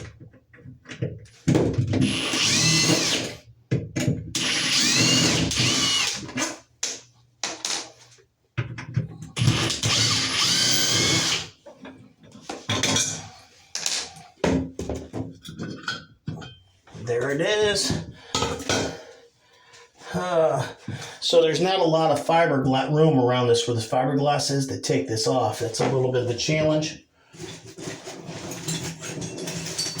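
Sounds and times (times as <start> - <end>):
power drill motor whine: 2.0 - 3.4, 4.4 - 6.3, 9.4 - 11.5.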